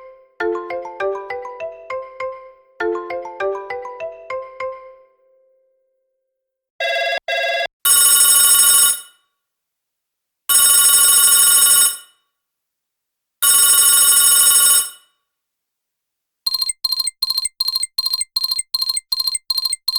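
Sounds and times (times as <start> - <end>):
telephone bell ringing: 6.8 - 9.2, 10.5 - 12.1, 13.4 - 15.0
short beeps: 16.5 - 19.9.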